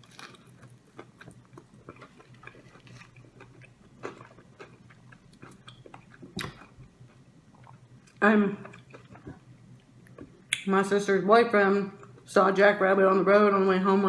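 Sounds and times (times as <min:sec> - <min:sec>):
close chewing and mouth sounds: 0:00.0 - 0:10.7.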